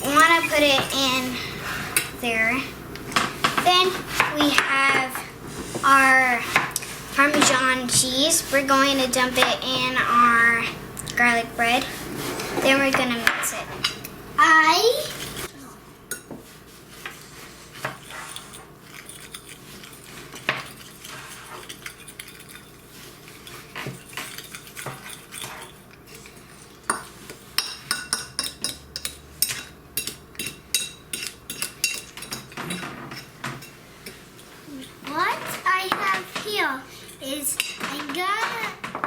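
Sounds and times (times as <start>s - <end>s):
spoon stirring in a bowl: 3.0s - 10.4s, 15.0s - 15.5s, 16.1s - 38.6s.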